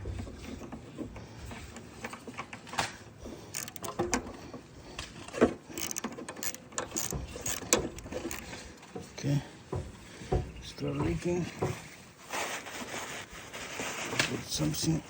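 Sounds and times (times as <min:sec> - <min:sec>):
wrench clicking on bolt: 0:03.5 - 0:04.2, 0:05.3 - 0:08.5.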